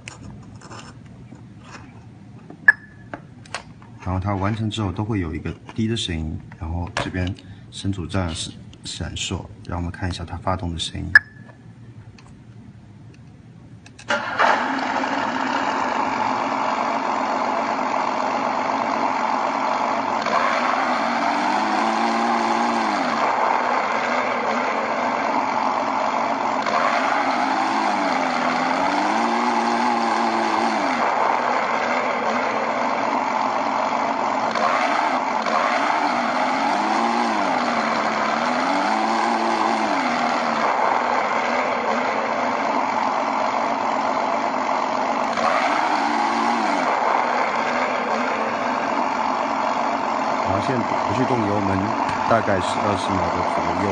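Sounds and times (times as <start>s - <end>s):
simulated engine through small speaker: 14.1s - 53.9s.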